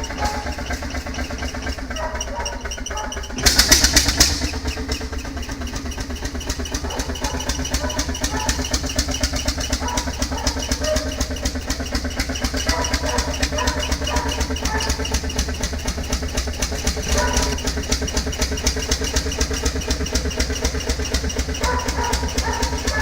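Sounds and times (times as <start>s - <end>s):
old engine running: 0.0s - 23.0s.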